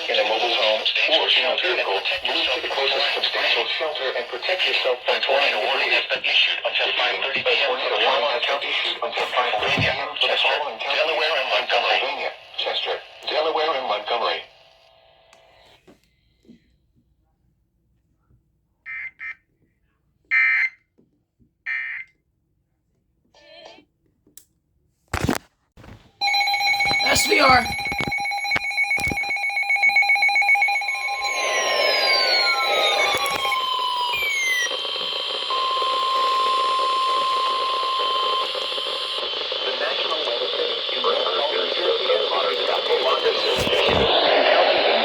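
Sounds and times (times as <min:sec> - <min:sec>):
high-pitched electronic beeps: 0:26.2 - 0:39.2.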